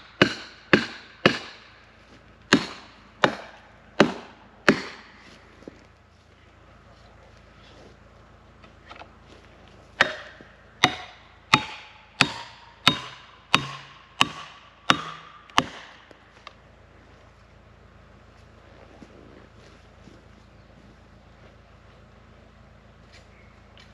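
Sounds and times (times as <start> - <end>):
hammer striking wedge: 0.0 - 1.8, 2.5 - 5.2, 10.0 - 16.2.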